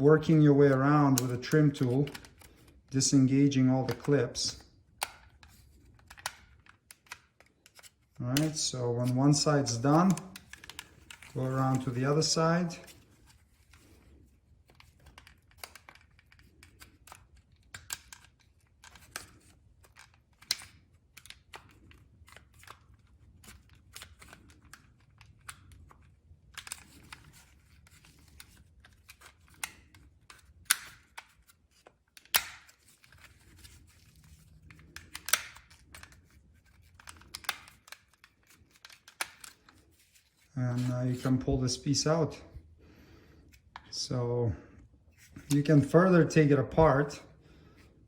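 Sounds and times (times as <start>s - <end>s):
plastic clips clicking: 1.1s - 2.7s, 3.8s - 13.0s, 14.7s - 39.8s
plastic tool scraping: 5.2s - 20.8s.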